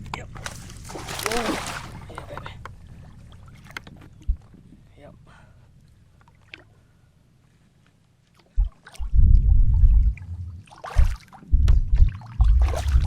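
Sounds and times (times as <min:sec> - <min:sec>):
wind buffeting microphone: 0:01.7 - 0:04.9, 0:08.6 - 0:13.0.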